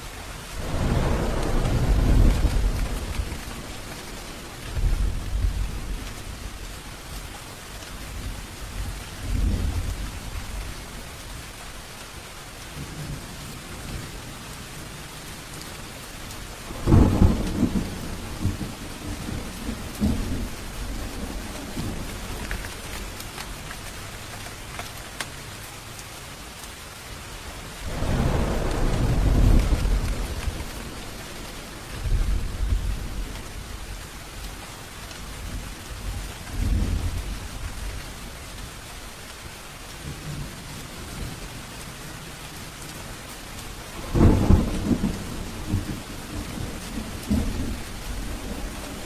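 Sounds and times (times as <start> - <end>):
steady rainfall: 0.0 - 49.0
thunder rumbling: 0.4 - 7.2, 16.4 - 24.0, 27.6 - 38.4, 43.6 - 49.0
sharp thunder clap: 0.6 - 4.1, 27.9 - 33.4, 44.0 - 49.0.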